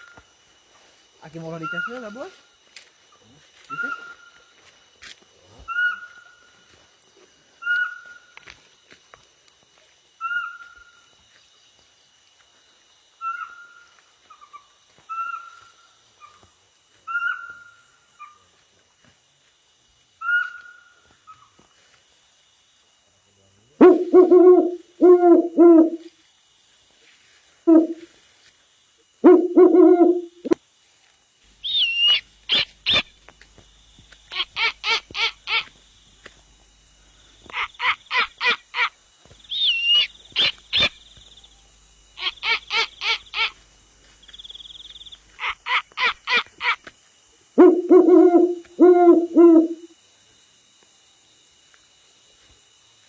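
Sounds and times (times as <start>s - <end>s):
owl-like hooting: 1.6s - 2.2s, 3.7s - 4.5s, 5.7s - 6.5s, 7.6s - 8.3s, 10.2s - 11.0s, 13.2s - 16.4s, 17.0s - 18.4s, 20.2s - 21.4s, 23.8s - 26.1s, 27.6s - 28.1s, 29.2s - 30.6s, 31.6s - 33.1s, 39.5s - 41.0s, 42.2s - 43.6s, 47.6s - 50.0s
rapid pulsed bird calls: 3.7s - 4.6s, 5.7s - 6.6s, 7.6s - 8.4s, 10.2s - 11.1s, 13.2s - 16.4s, 17.0s - 18.4s, 23.8s - 26.0s, 29.2s - 30.6s, 31.6s - 33.2s, 37.5s - 43.6s, 44.3s - 46.8s, 47.6s - 49.9s.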